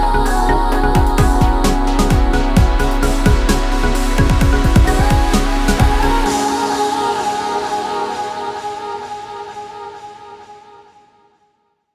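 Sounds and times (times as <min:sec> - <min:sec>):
heavy kick drum: 0:00.0 - 0:06.3.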